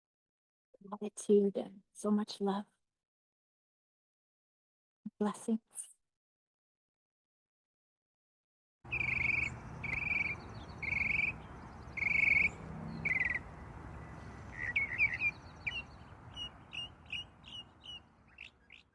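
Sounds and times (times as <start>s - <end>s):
bird trills: 8.9s - 18.9s
quick short bird chirps: 8.9s - 18.9s.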